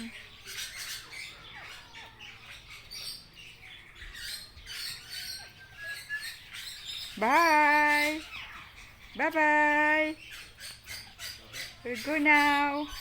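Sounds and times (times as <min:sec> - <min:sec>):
parrots chirping and calling: 0:00.0 - 0:13.0.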